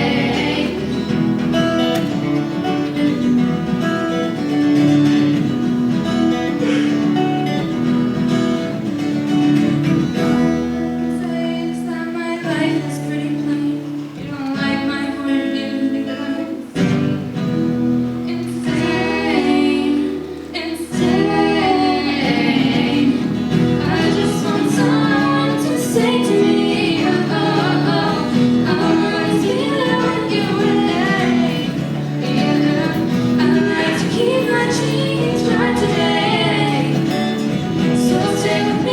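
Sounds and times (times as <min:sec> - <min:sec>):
woman singing: 0:00.0 - 0:01.3, 0:11.0 - 0:17.0, 0:18.2 - 0:38.9
acoustic guitar playing: 0:00.0 - 0:38.9.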